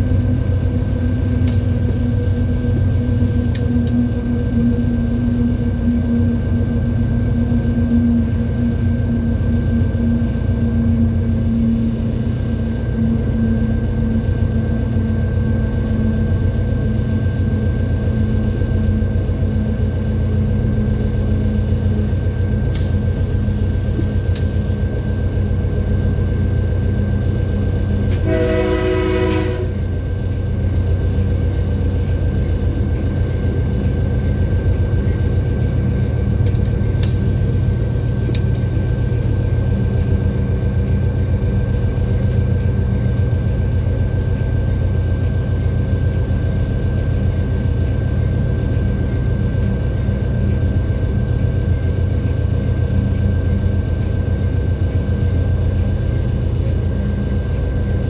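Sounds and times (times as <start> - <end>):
diesel locomotive rumbling: 0.0 - 58.0
locomotive air horn blast: 28.1 - 29.9.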